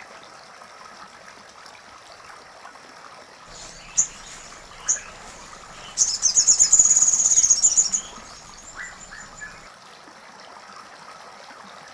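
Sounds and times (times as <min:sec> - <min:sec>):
bird trilling: 0:03.5 - 0:09.7
faint bird chirps: 0:03.5 - 0:09.7.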